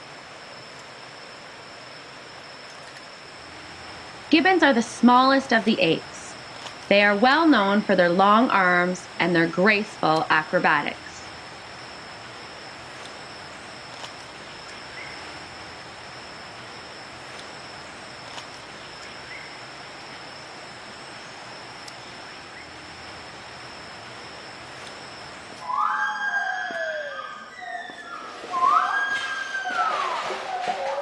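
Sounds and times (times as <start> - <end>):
high-pitched insect drone: 0.0 - 31.0
gibbons whooping calls: 25.6 - 31.0.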